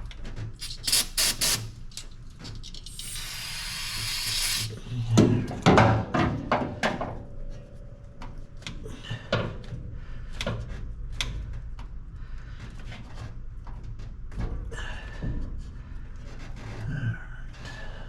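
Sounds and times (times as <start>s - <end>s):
low steady hum: 1.6s - 15.0s.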